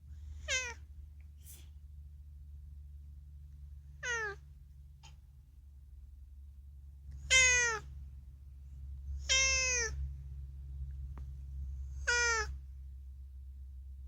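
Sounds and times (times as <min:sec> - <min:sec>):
low steady hum: 0:00.0 - 0:14.0
cat meowing: 0:00.4 - 0:00.8, 0:04.0 - 0:04.4, 0:07.2 - 0:07.9, 0:09.2 - 0:10.0, 0:12.0 - 0:12.5.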